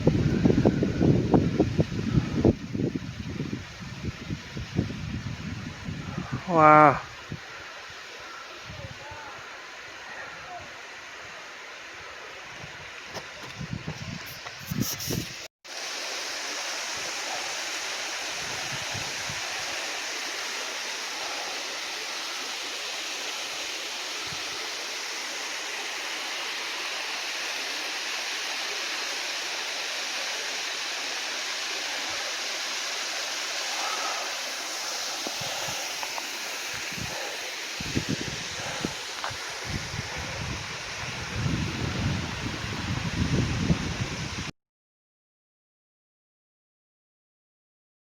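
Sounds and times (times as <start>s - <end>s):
waterfall rushing: 15.7s - 44.4s.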